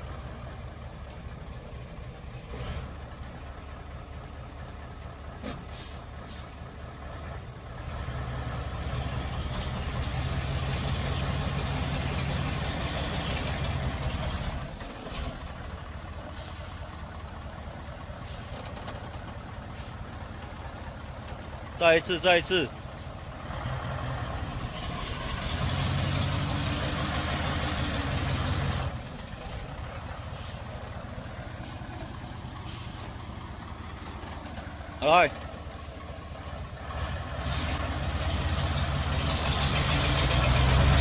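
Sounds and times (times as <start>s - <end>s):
truck engine running: 0.0s - 41.0s.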